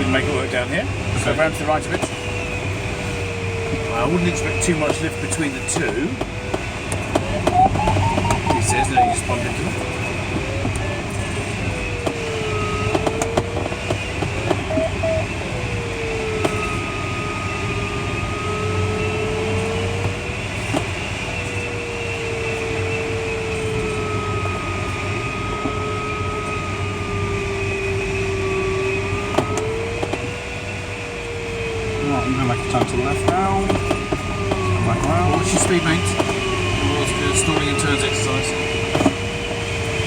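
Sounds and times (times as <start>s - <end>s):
variometer tone wavering in pitch: 7.2s - 20.4s, 21.1s - 40.0s.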